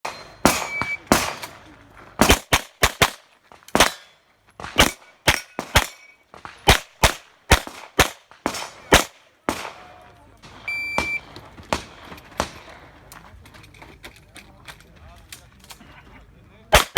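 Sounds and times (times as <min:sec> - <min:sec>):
handgun shots: 0:00.0 - 0:01.6, 0:02.2 - 0:09.9.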